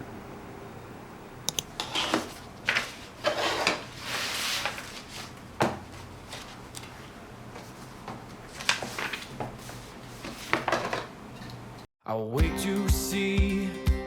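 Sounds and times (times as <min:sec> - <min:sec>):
rustling: 0:01.7 - 0:11.1.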